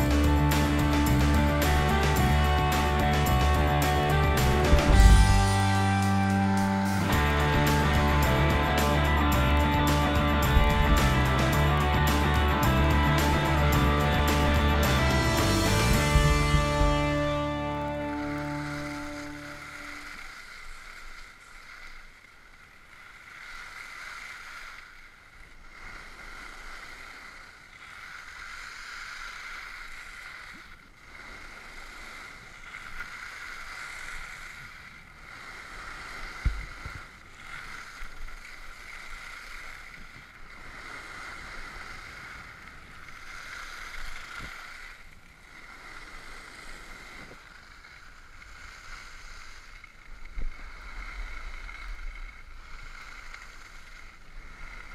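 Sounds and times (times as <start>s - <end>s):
dull thump: 4.4s - 6.6s, 14.2s - 17.4s, 36.4s - 36.7s
skis hissing over snow: 13.2s - 22.2s, 25.7s - 54.9s.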